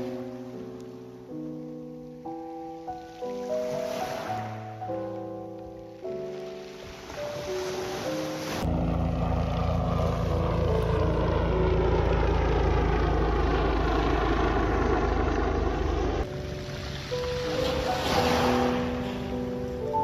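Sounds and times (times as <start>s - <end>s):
soft background music: 0.0s - 20.0s
motorboat engine passing: 3.0s - 4.8s, 6.4s - 20.0s.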